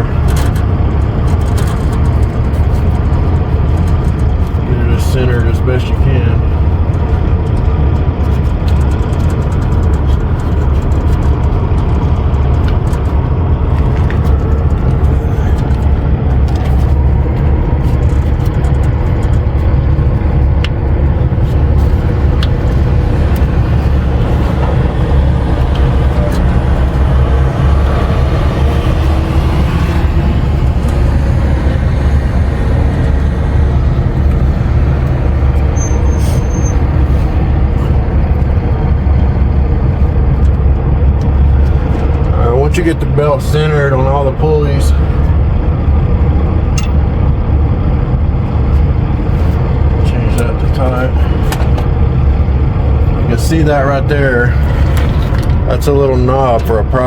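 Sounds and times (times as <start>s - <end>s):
diesel engine idling: 0.0s - 57.0s.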